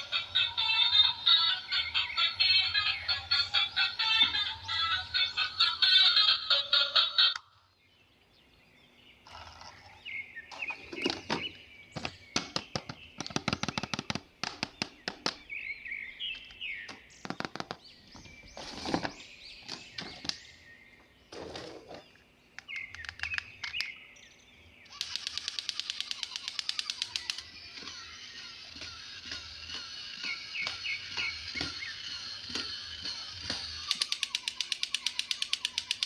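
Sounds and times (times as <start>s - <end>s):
high chirping squeaks: 24.9s - 36.0s
plastic toy parts clicking: 25.0s - 36.0s.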